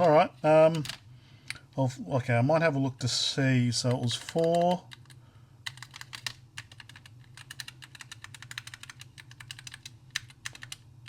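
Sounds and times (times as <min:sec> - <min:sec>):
faint steady low hum: 0:00.0 - 0:11.0
mechanical keys clicking: 0:04.2 - 0:10.8.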